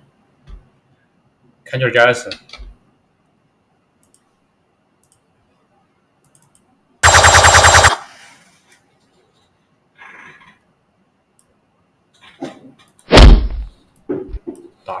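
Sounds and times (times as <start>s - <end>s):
faint clicks: 4.0s - 4.4s, 5.0s - 5.3s, 6.2s - 6.7s
rapid rattling burst: 7.0s - 8.1s.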